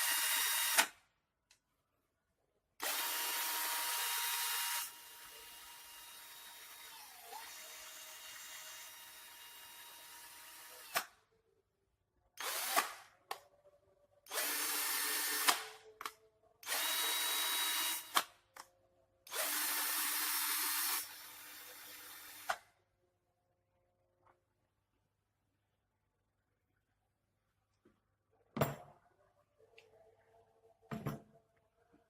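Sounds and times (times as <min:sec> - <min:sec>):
cordless drill running: 0:00.0 - 0:00.8, 0:02.8 - 0:11.0, 0:12.4 - 0:13.0, 0:14.3 - 0:15.7, 0:16.6 - 0:18.2, 0:19.3 - 0:22.6.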